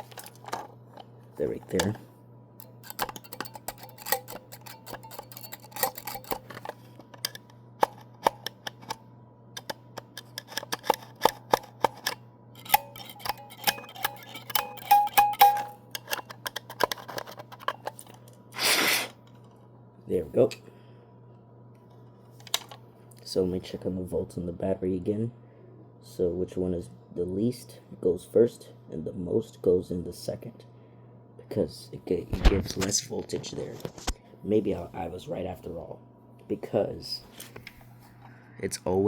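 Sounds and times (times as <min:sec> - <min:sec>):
short hiss: 0:18.6 - 0:19.2.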